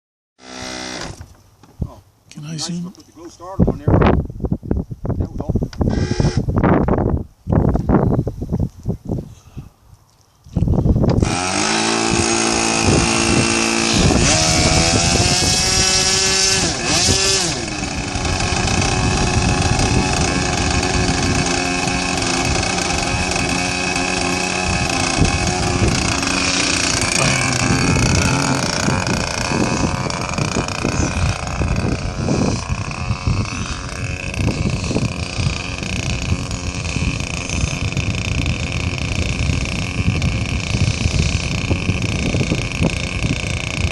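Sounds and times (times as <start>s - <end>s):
model airplane engine running: 0.4s - 1.3s, 5.9s - 6.4s, 11.2s - 43.9s.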